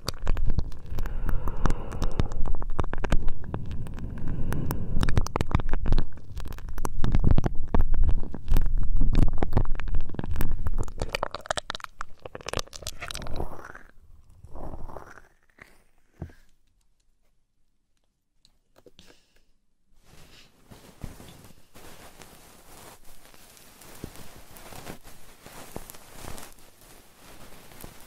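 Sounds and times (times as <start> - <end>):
crackles and scratchy clicks: 0.0 - 19.0, 20.0 - 28.0
hands rubbing microphone: 20.1 - 28.0.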